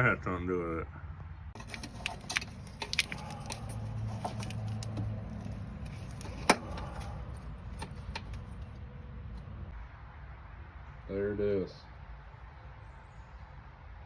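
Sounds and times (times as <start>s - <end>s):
small clicks and rattles: 1.6s - 8.8s.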